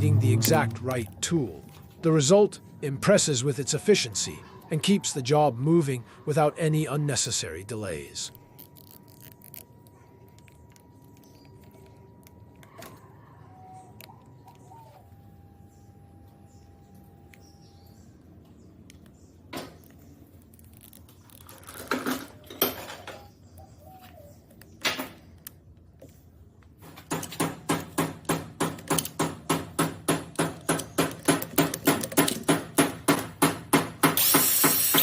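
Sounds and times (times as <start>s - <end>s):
low hum: 0.0s - 5.2s
tool clicks and knocks: 26.9s - 35.0s.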